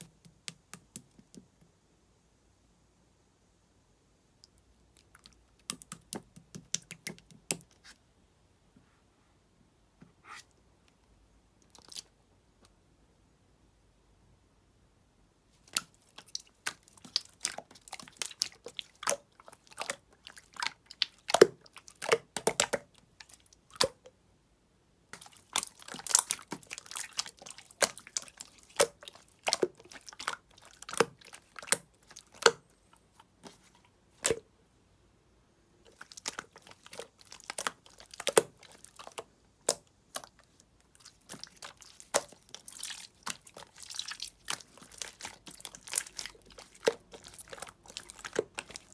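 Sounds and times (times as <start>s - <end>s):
slime crackling and popping: 15.7s - 24.0s, 25.2s - 32.6s, 35.9s - 48.9s.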